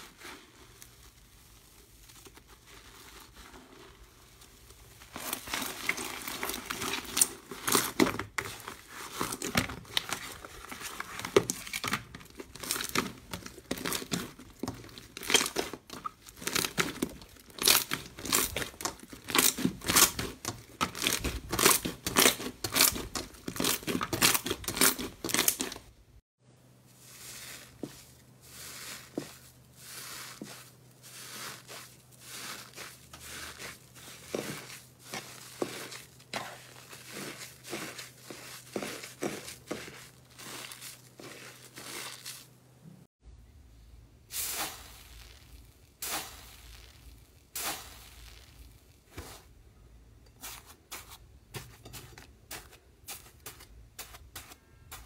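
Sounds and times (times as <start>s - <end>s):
slime crackling and popping: 4.2s - 25.9s.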